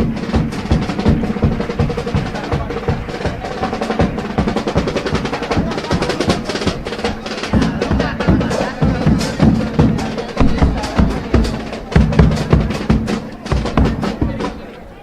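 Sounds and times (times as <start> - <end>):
bass drum and snare drum: 0.0 - 14.8
held instrument tones: 0.0 - 15.0.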